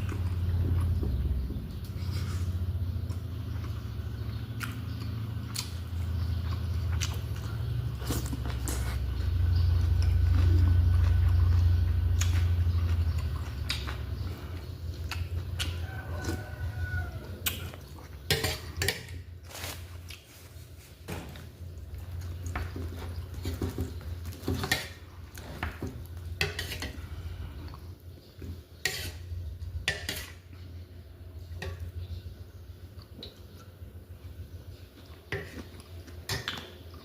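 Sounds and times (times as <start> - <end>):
steady low hum: 0.0 - 36.3
utensils clinking against dishes: 17.5 - 19.8, 22.5 - 27.2.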